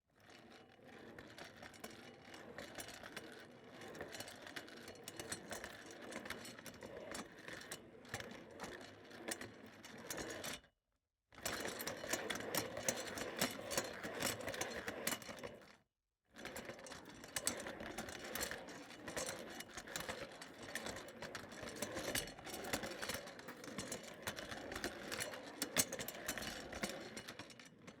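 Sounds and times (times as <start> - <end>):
office chair rolling on casters: 11.5 - 15.6.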